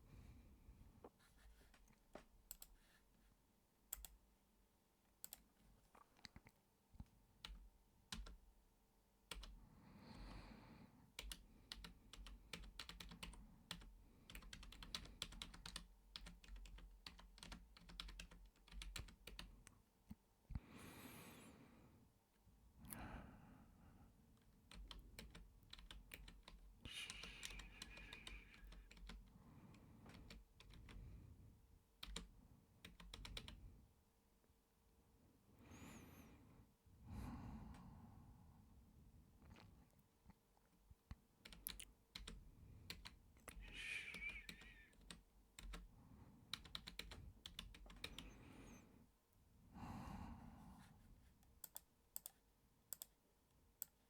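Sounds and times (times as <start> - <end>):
soft keyboard typing: 1.5 - 3.0, 3.9 - 4.3, 5.2 - 8.5, 9.3 - 9.6, 11.1 - 19.8, 24.4 - 31.1, 32.0 - 33.7, 41.4 - 45.9, 46.5 - 48.5, 51.4 - 53.2, 53.8 - 54.0.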